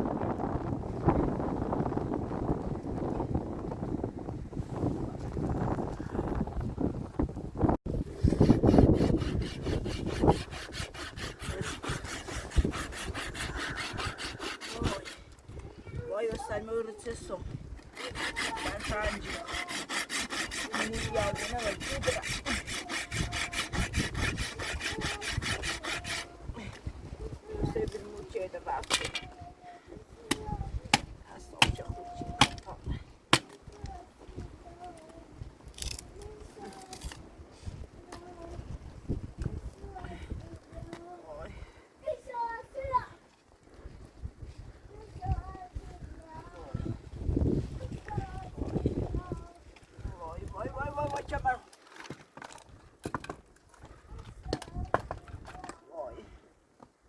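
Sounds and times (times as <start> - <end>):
fast rasping strokes: 8.0 - 15.3, 17.1 - 26.4.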